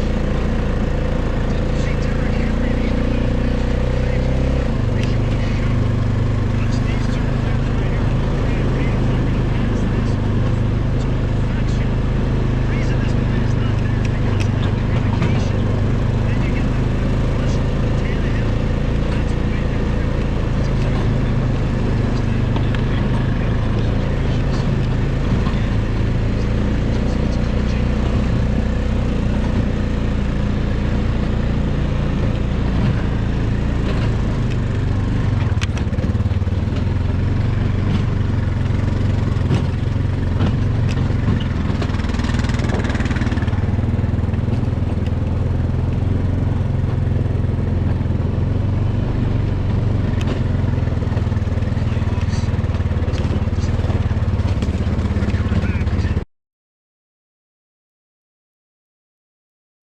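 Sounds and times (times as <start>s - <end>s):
small engine running: 0.0s - 56.2s.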